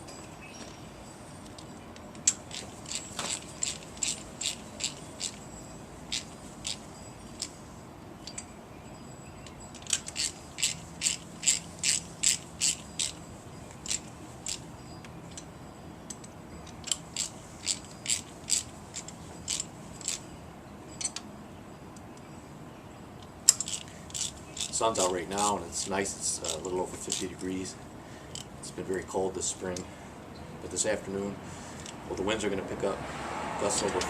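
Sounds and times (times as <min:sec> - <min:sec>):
ratchet wrench clicking: 0:01.5 - 0:07.6, 0:09.7 - 0:15.5, 0:16.1 - 0:20.2, 0:23.5 - 0:27.7.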